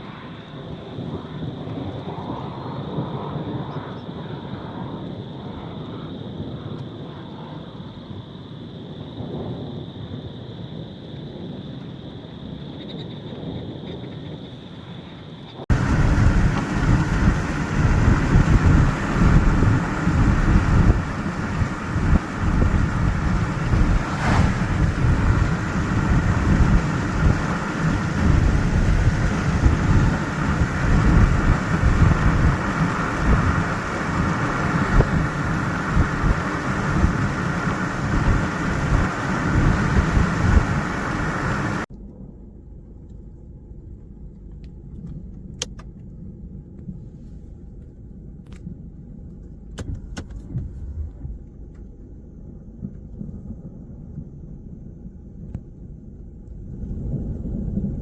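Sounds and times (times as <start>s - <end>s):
road and wind noise: 0.0s - 58.0s
quiet low rumble: 15.7s - 58.0s.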